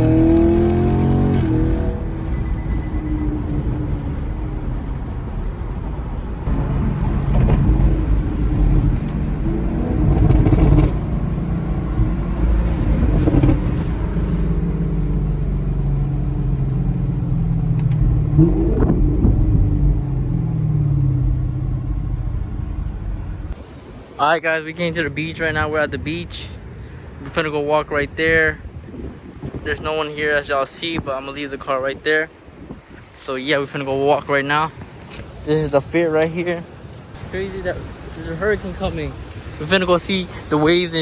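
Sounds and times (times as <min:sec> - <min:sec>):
car engine revving: 0:00.0 - 0:23.6
road rumble: 0:00.0 - 0:41.0.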